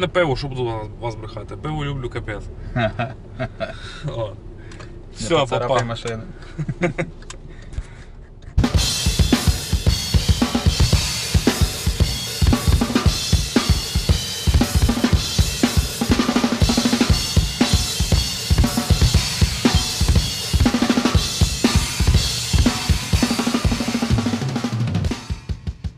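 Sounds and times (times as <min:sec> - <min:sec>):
drum kit music: 0:08.6 - 0:25.9.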